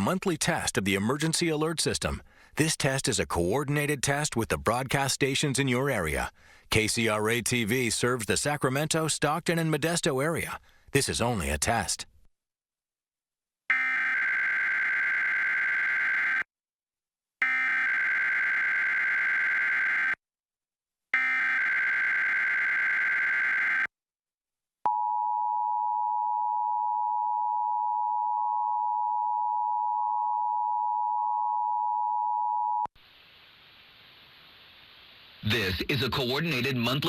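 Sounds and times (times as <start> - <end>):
faint hiss: 33.0 - 35.8.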